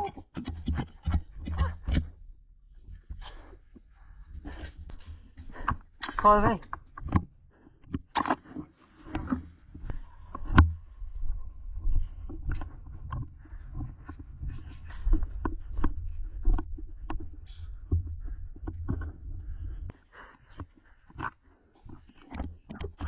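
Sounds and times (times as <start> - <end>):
scattered knocks and clicks: 0.0 - 2.1, 22.1 - 23.0
low rumble: 10.0 - 19.9.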